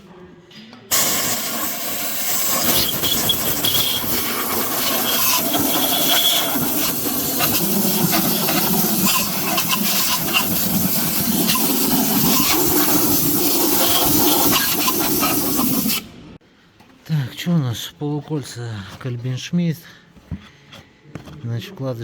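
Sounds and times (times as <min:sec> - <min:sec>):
compressed-air blowgun hissing: 0:00.9 - 0:16.1.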